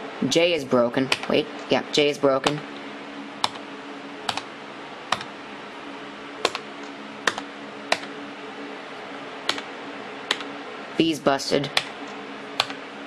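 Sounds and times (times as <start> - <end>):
faint steady hum: 0.0 - 13.0
keyboard key clicks: 4.3 - 4.5, 5.1 - 5.3, 7.2 - 8.1, 12.6 - 12.8.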